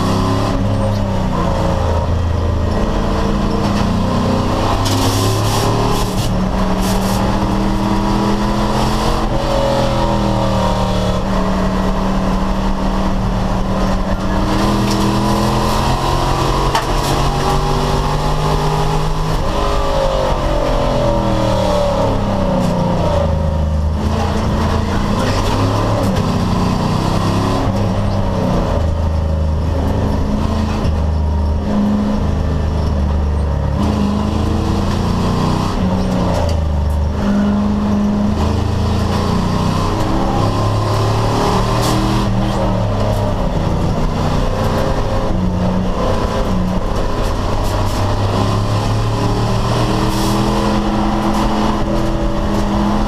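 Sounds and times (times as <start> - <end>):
race car engine running hard: 0.0 - 53.0.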